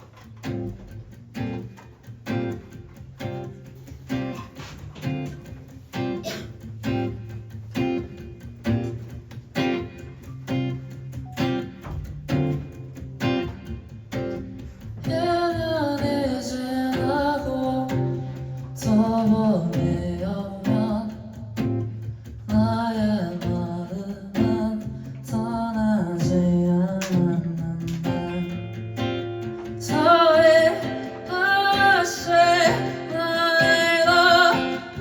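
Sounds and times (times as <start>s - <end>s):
acoustic guitar strumming: 0.0s - 35.0s
person singing: 15.1s - 21.5s, 22.5s - 28.9s, 29.8s - 35.0s.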